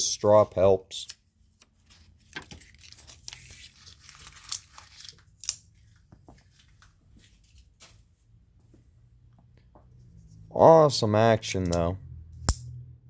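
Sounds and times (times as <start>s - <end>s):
paper rustling: 1.5s - 8.1s.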